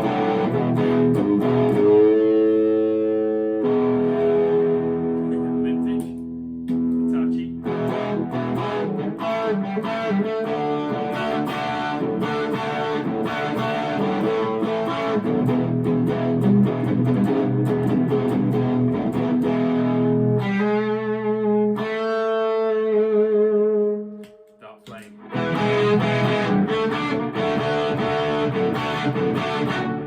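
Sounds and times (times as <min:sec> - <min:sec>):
overdriven electric guitar: 0:00.0 - 0:30.0.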